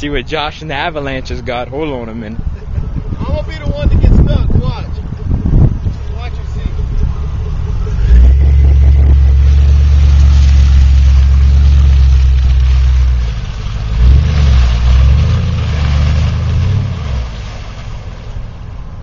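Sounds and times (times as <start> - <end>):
truck engine revving: 5.0 - 18.5.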